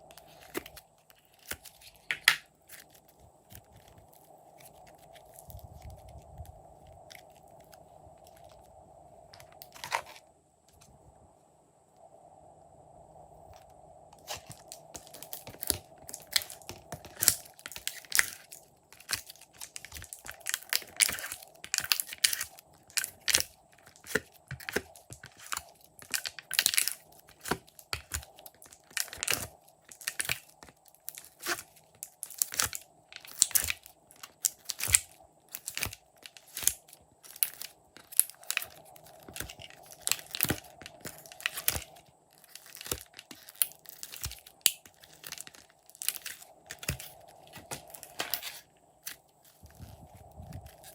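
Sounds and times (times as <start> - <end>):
slime crackling and popping: 14.2 - 49.2.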